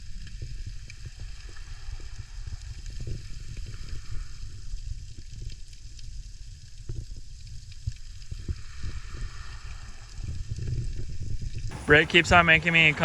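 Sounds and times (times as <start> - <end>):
surf washing on beach: 11.7 - 13.0
wind buffeting microphone: 11.7 - 13.0.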